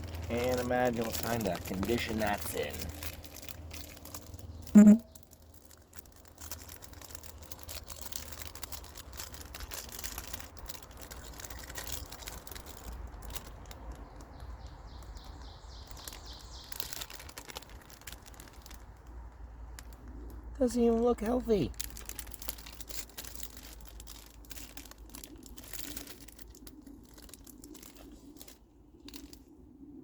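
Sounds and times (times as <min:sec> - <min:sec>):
foil wrapper crinkling: 0:00.0 - 0:29.6
bird calling repeated notes: 0:04.7 - 0:05.2.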